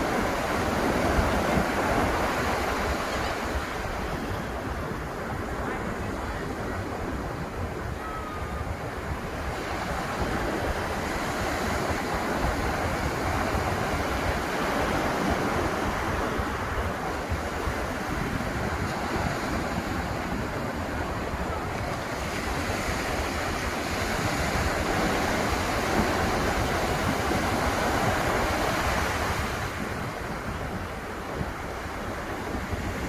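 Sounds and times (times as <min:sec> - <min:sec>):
waves breaking on beach: 0:00.0 - 0:33.0
wind buffeting microphone: 0:00.0 - 0:33.0.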